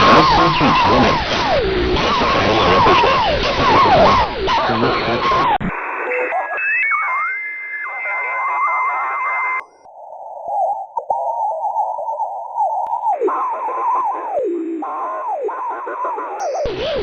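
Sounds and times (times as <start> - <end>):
warbling shortwave radio signal: 0.0 - 17.0
steady whistle: 10.5 - 17.0.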